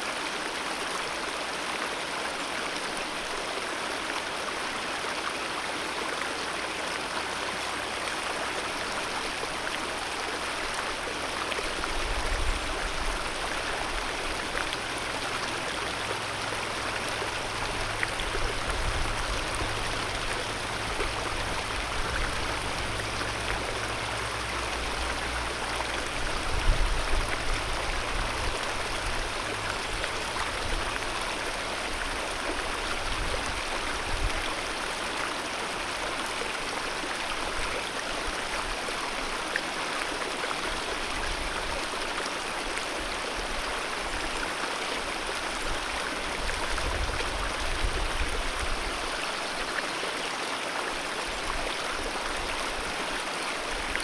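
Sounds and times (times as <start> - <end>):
river rushing: 0.1 - 54.0.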